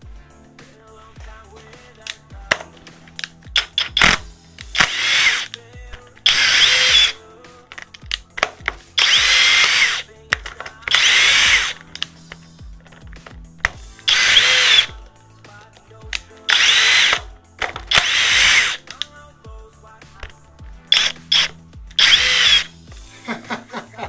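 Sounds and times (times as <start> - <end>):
impact driver driving screws: 2.0 - 12.2, 12.9 - 15.0, 16.2 - 19.1, 20.9 - 22.7.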